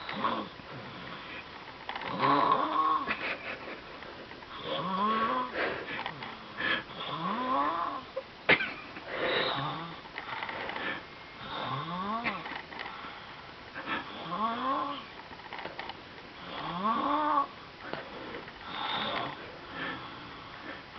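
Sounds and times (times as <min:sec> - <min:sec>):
baby snoring: 0:00.0 - 0:03.1, 0:04.6 - 0:08.1, 0:09.3 - 0:12.4, 0:13.8 - 0:15.1, 0:16.4 - 0:17.6, 0:18.6 - 0:20.6.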